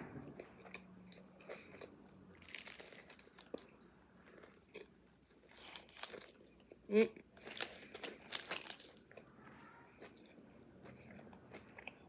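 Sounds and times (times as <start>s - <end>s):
chewing and crunching bread: 0.2s - 12.0s
crusty bread crackling: 2.3s - 3.8s, 5.3s - 6.7s, 7.3s - 9.3s.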